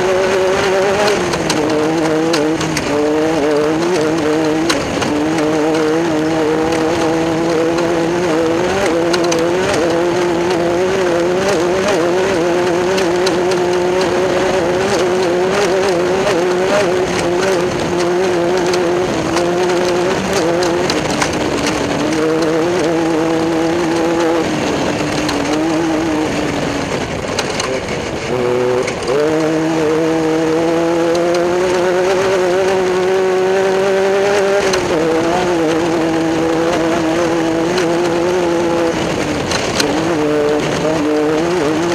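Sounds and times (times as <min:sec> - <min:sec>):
buggy engine revving hard: 0:00.0 - 0:41.9
rapid clicks and rattles: 0:00.0 - 0:41.9.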